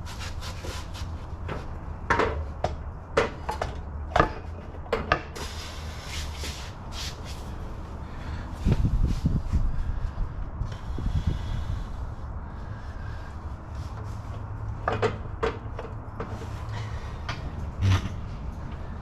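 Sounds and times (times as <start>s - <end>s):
tools knocking and clicking: 1.5s - 5.4s, 14.8s - 16.5s
hiss: 5.4s - 7.4s
low steady rumble: 16.0s - 19.0s.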